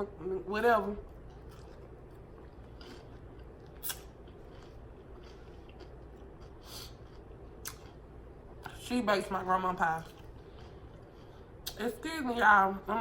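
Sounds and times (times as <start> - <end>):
person chewing food: 1.0 - 8.8, 10.0 - 11.8.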